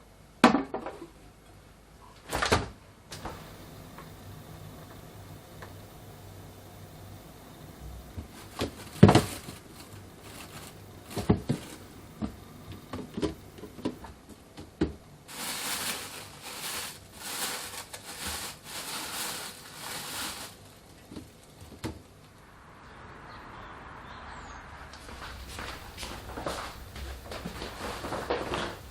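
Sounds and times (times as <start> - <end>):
items knocking when set down: 10.4 - 14.0
rustling scrubbing strokes: 15.3 - 20.7.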